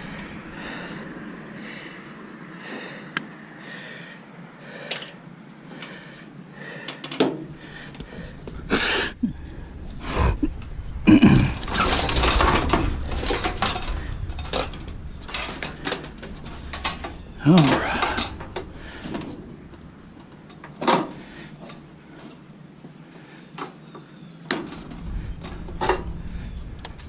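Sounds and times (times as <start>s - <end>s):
metal parts clattering and scraping: 10.0s - 22.4s, 24.5s - 27.0s.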